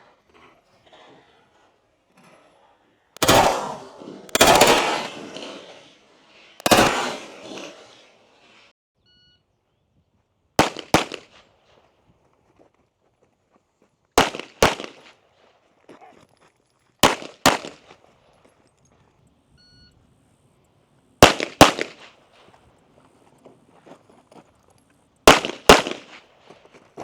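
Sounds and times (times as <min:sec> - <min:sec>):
pistol shots echoing: 0:03.2 - 0:06.0, 0:06.6 - 0:08.0, 0:10.6 - 0:11.4, 0:14.2 - 0:15.1, 0:17.0 - 0:18.0, 0:21.2 - 0:22.1, 0:25.3 - 0:26.3.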